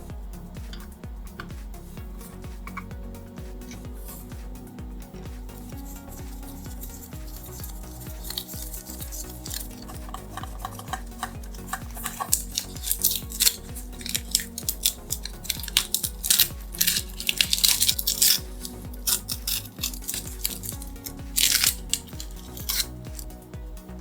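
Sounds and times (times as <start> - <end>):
background music: 0.0 - 24.0
hand tools clicking and scraping: 5.6 - 23.3.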